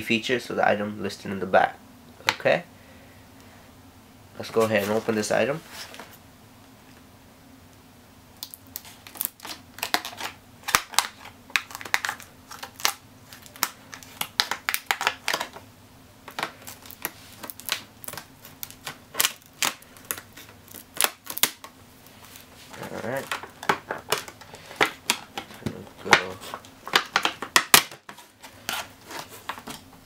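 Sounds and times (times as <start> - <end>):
plastic packaging crackling: 8.4 - 15.6, 16.2 - 30.0.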